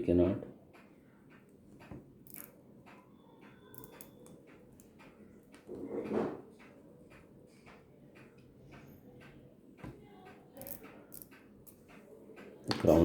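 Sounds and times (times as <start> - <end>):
small clicks on pocket watch: 0.7 - 5.6, 10.2 - 12.5.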